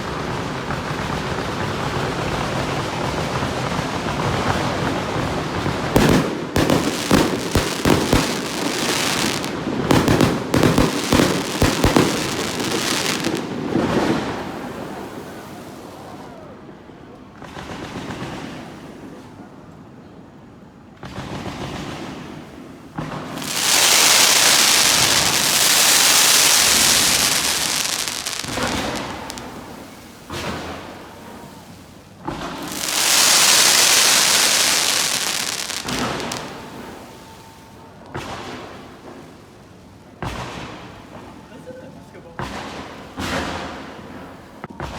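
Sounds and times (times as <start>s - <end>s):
loud crackling hiss: 0.0s - 14.9s, 23.2s - 30.2s, 32.4s - 37.4s
fireworks bangs and crackles: 0.0s - 19.9s, 21.0s - 44.9s.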